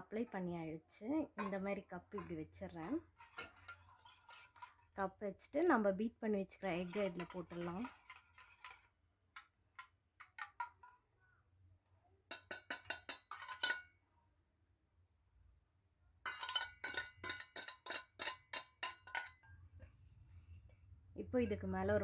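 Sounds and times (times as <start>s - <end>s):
metal utensil clinking against bowl: 1.4s - 2.5s, 3.1s - 4.8s, 6.8s - 8.9s, 12.3s - 13.9s, 16.2s - 19.6s.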